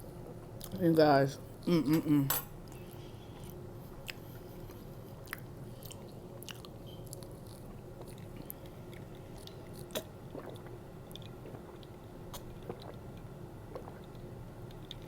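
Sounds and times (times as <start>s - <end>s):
air conditioner hum: 0.0s - 15.0s
close-miked chewing: 2.7s - 13.0s.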